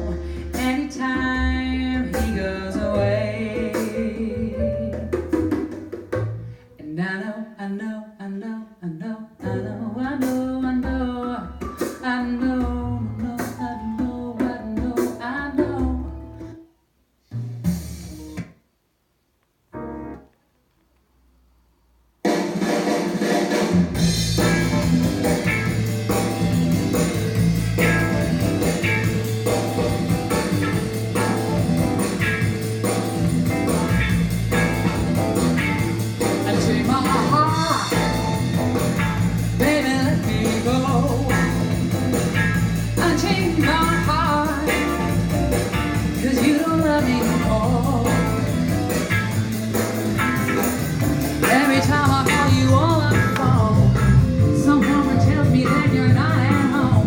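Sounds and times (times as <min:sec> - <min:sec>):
person singing: 0:00.0 - 0:05.2, 0:06.8 - 0:16.5, 0:36.2 - 0:38.8, 0:39.6 - 0:41.9, 0:43.0 - 0:45.2, 0:46.1 - 0:48.7, 0:51.4 - 0:57.0
bass line guitar and drums: 0:00.0 - 0:06.6, 0:09.4 - 0:16.6, 0:17.3 - 0:18.6, 0:23.2 - 0:57.0
music through a speaker: 0:22.3 - 0:57.0.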